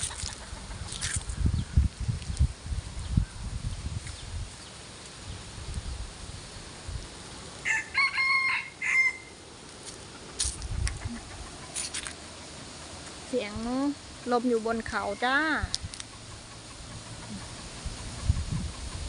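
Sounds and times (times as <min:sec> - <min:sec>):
wind gusting on microphone: 0:00.0 - 0:07.3, 0:10.1 - 0:12.0, 0:13.4 - 0:19.0
rooster crowing: 0:07.6 - 0:09.4.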